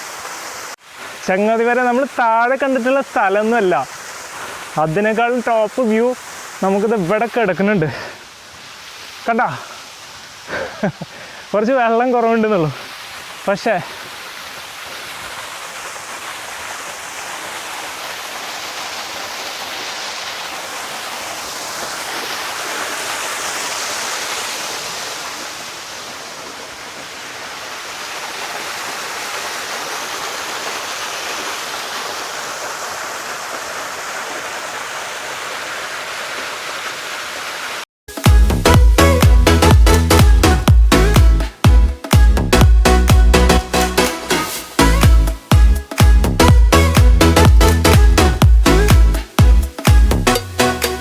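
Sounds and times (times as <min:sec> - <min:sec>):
water splashing over rock: 0:12.4 - 0:43.2.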